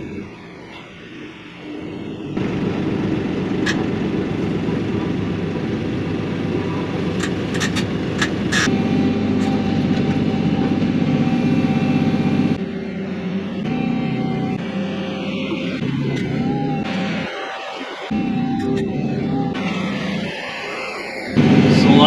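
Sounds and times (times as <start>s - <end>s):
tractor diesel engine running: 2.1s - 16.9s.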